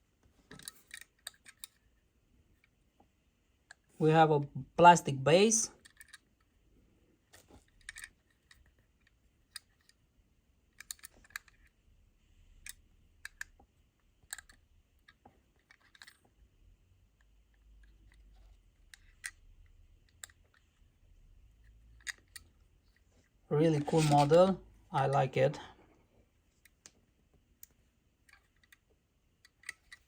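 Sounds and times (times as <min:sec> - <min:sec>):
toy van clicking and tapping: 0:00.5 - 0:01.9, 0:05.8 - 0:06.5, 0:07.3 - 0:10.0, 0:10.7 - 0:11.8, 0:12.6 - 0:16.3, 0:17.2 - 0:20.7, 0:21.6 - 0:22.6, 0:27.6 - 0:30.0.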